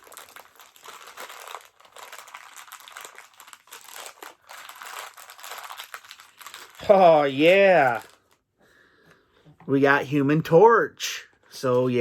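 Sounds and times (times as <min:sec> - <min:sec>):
package crinkling and tearing: 0:00.0 - 0:08.4.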